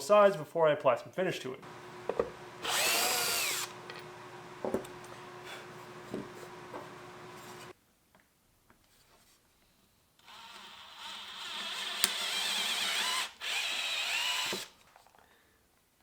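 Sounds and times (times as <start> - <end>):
wood lathe whine: 1.7 - 7.7, 10.5 - 14.7.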